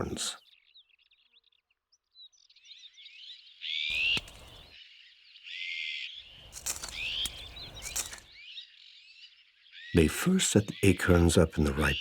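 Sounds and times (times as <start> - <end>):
small birds chirping and singing: 0.0 - 12.0
drawn-out bird calls: 3.9 - 4.7, 6.4 - 8.3.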